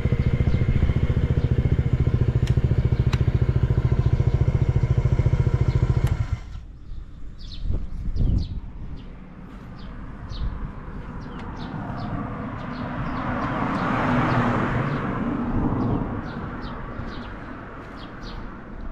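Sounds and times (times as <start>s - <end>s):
scooter engine idling: 0.0s - 7.4s
birds chirping: 0.0s - 15.2s, 15.8s - 18.9s
vehicle passing: 8.7s - 18.8s.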